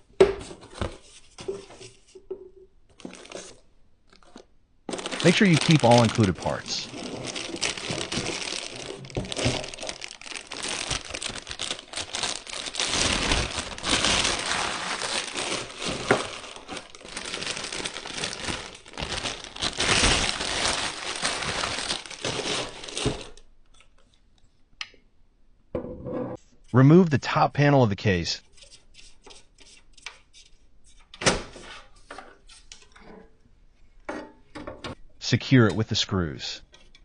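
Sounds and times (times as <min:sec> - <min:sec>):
plastic packaging crinkling: 0:02.9 - 0:23.4.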